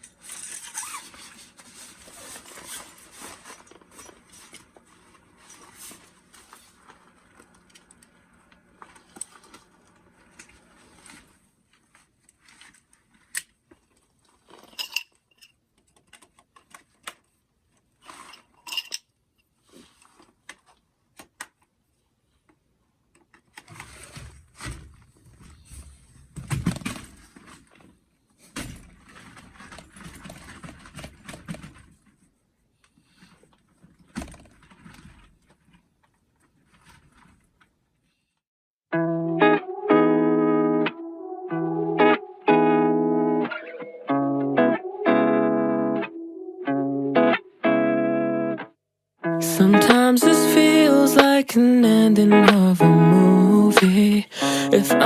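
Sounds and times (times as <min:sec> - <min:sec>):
camp gear clinking and knocking: 0:00.0 - 0:06.1, 0:14.5 - 0:16.1, 0:28.5 - 0:32.1
rustling and thudding handling noise: 0:00.0 - 0:07.5, 0:23.6 - 0:32.4, 0:33.0 - 0:37.9.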